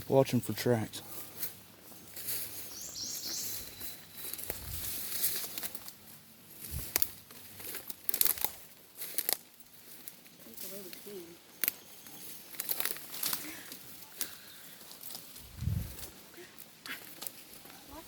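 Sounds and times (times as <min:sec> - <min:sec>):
twigs crackling underfoot: 0:01.0 - 0:18.0
bird whistling notes: 0:02.7 - 0:04.4.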